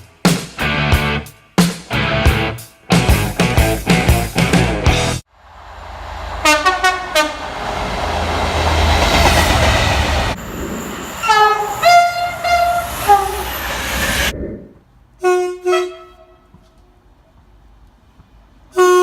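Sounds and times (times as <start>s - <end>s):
passing train rumble: 4.9s - 19.0s
two-note train horn blasts: 6.4s - 7.5s, 11.2s - 13.5s, 15.2s - 16.8s, 18.7s - 19.0s
train horn blasts: 6.4s - 7.6s, 11.2s - 13.6s, 15.2s - 17.0s, 18.7s - 19.0s.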